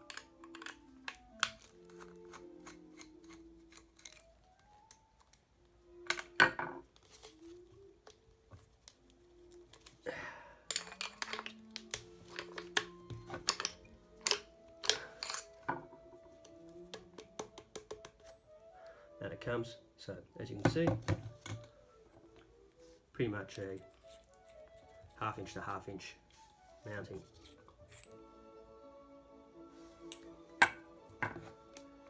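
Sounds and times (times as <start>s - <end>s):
plastic tubing and fittings clicking: 0.0s - 5.4s, 10.7s - 15.2s, 16.4s - 18.4s
soft background music: 0.0s - 32.0s.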